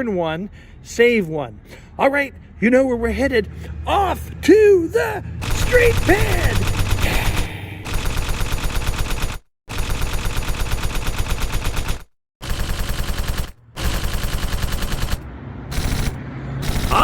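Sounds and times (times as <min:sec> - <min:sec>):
machine-gun fire: 0:05.4 - 0:17.0.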